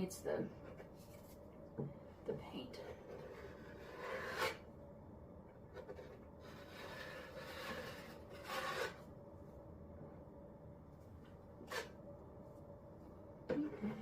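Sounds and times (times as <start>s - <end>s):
blade scraping wet cement: 6.5s - 9.0s.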